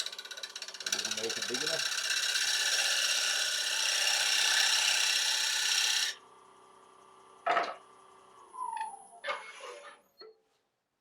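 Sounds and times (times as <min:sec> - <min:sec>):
turning tool scraping wood: 0:00.0 - 0:06.2
wood lathe running: 0:00.0 - 0:06.8.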